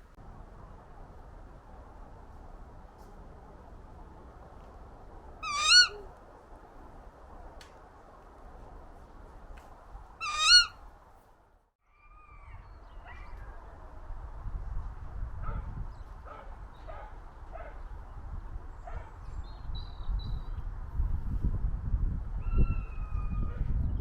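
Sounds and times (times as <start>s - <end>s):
bird calling: 5.4s - 6.1s, 10.2s - 10.7s.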